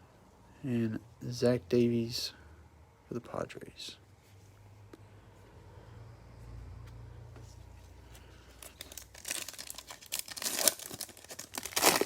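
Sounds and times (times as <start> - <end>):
foil wrapper tearing and crinkling: 8.6 - 12.0.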